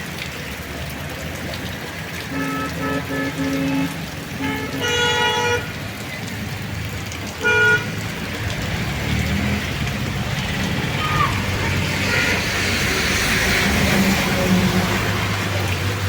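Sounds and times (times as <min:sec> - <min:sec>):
road traffic rumble: 0:00.0 - 0:16.0
vehicle horn honking: 0:02.3 - 0:05.7, 0:07.4 - 0:07.9.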